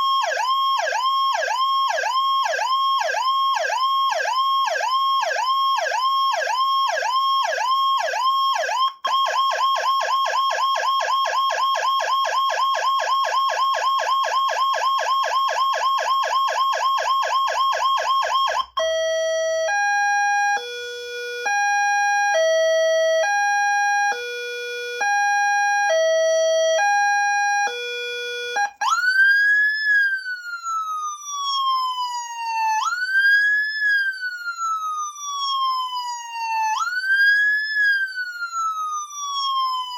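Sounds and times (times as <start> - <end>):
electronic siren tones: 9.2 - 39.9.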